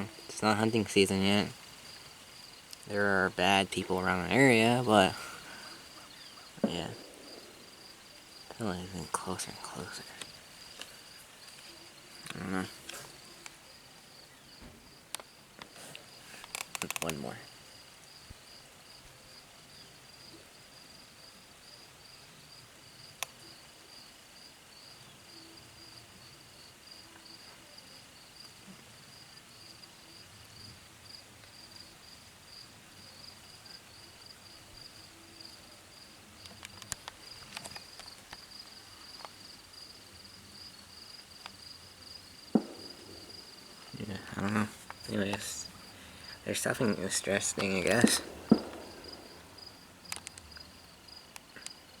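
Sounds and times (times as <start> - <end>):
crickets chirping: 0.0 - 52.0
sharp crack: 2.7 - 13.6, 42.4 - 51.8.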